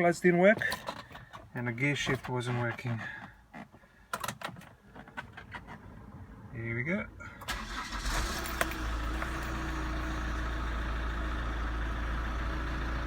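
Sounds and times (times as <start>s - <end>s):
diesel engine starting and idling: 7.2s - 13.0s.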